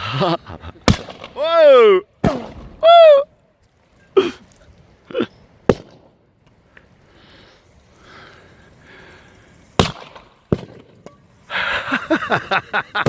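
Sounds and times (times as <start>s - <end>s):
aerosol cans bursting in fire: 0.0s - 3.3s, 4.1s - 13.0s
crackling bangs: 0.8s - 3.1s, 5.6s - 6.6s, 9.7s - 13.0s.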